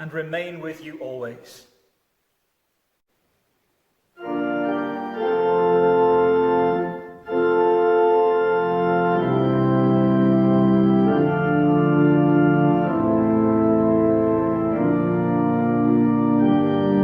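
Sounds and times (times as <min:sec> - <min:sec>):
church organ playing chords: 0:04.2 - 0:17.0.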